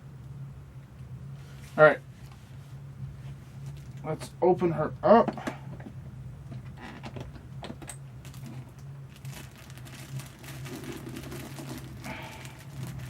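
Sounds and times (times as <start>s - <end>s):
steady low hum: 0.0s - 13.0s
plastic packing crinkling: 8.2s - 13.0s.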